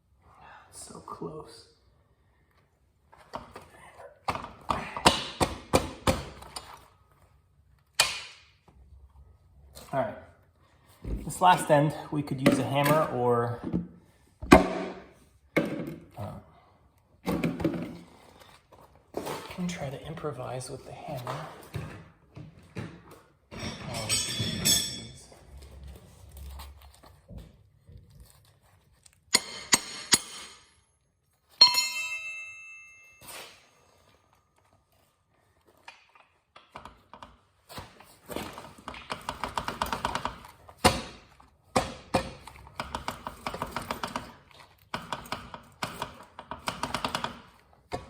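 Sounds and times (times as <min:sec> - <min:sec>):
hammer on metal: 0:29.4 - 0:30.7, 0:31.6 - 0:33.2.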